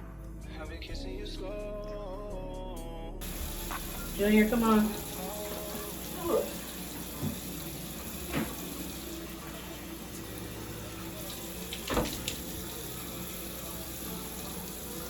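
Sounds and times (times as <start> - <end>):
tap water running into sink: 3.2 - 15.0.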